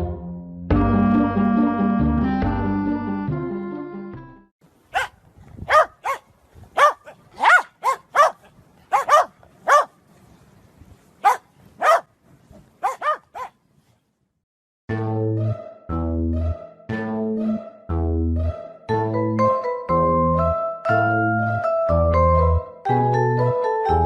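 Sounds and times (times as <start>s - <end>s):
dog barking: 4.9s - 10.0s, 11.2s - 12.1s, 12.8s - 13.6s.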